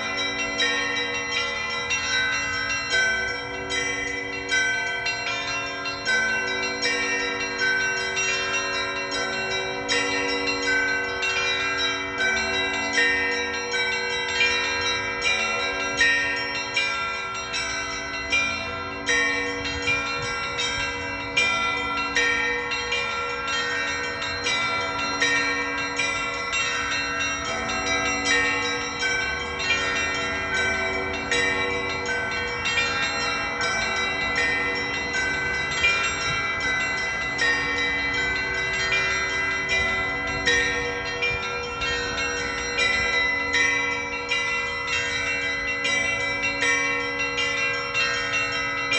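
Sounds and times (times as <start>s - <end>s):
hum of larger bells: 0.0s - 48.9s
small bells ringing quickly: 0.0s - 48.9s.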